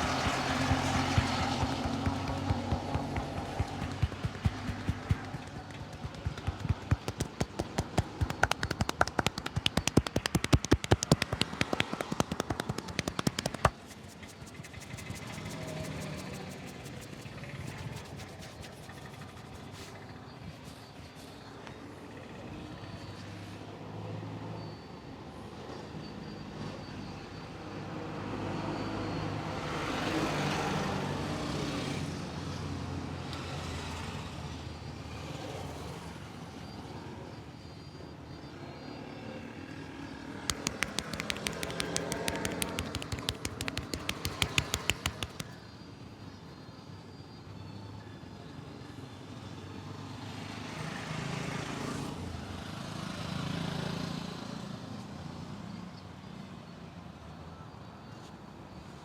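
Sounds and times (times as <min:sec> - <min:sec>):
quick hand taps: 0:00.0 - 0:19.6, 0:40.5 - 0:45.6
street traffic: 0:00.0 - 0:21.0, 0:40.5 - 0:45.6.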